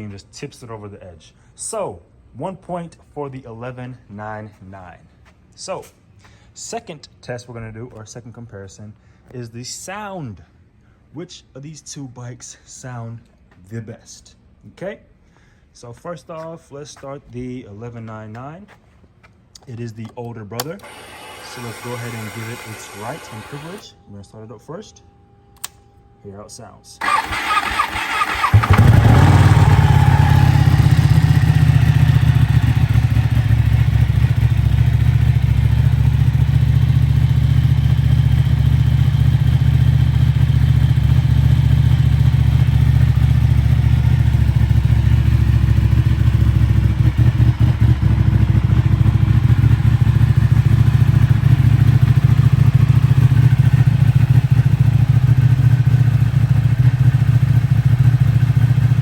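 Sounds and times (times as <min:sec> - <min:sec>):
motorcycle engine starting and idling: 0:20.6 - 0:23.9, 0:27.0 - 0:59.0.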